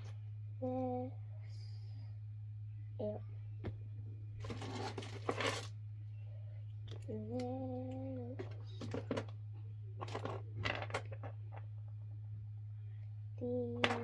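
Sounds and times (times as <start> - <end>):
low electrical hum: 0.0 - 14.0
plastic toys clicking and rustling: 4.4 - 5.7, 8.3 - 9.4, 10.0 - 11.6, 13.8 - 14.0.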